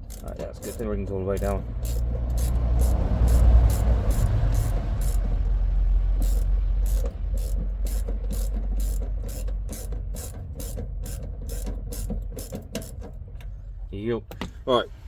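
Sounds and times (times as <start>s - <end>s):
ratchet spanner clicking: 0.0s - 5.6s, 6.2s - 13.2s.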